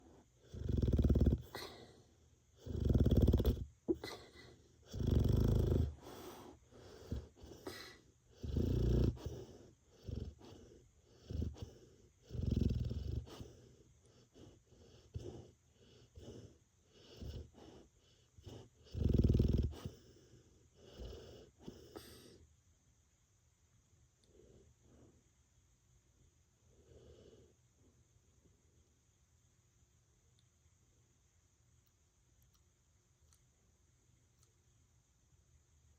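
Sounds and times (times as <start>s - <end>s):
dog snoring: 0.0s - 22.4s, 26.7s - 27.5s.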